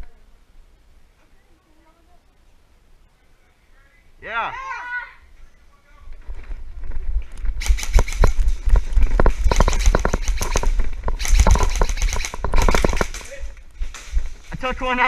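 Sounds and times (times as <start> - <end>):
low rumble of microphone handling: 6.0 - 14.6
sharp snaps and crackling: 6.2 - 14.8.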